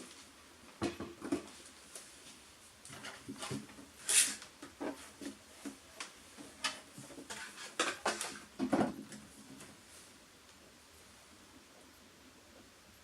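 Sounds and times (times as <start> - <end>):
objects being handled: 0.8 - 9.8.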